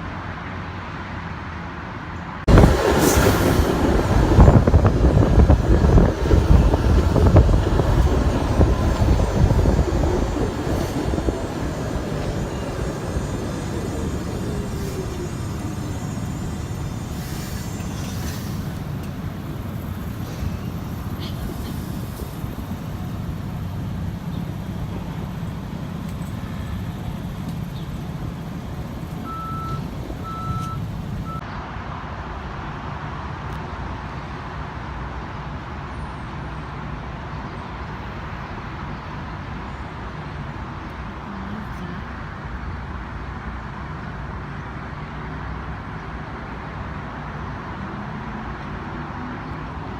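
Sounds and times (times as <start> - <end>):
street traffic rumble: 0.0 - 49.9
short high beeps: 29.3 - 31.4.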